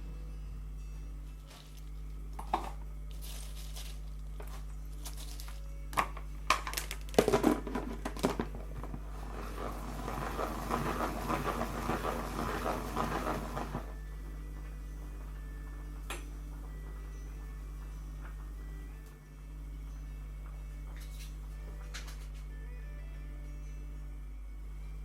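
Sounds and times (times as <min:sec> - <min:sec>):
low steady hum: 0:00.0 - 0:25.0
crackling rustling texture: 0:03.1 - 0:05.7, 0:08.3 - 0:14.0.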